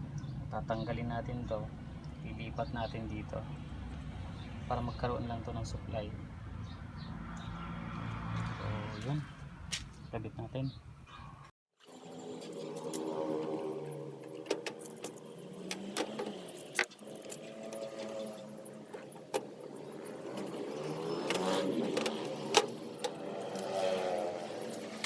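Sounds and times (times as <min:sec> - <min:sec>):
clicks and knocks handling circuit boards: 0:14.2 - 0:23.7.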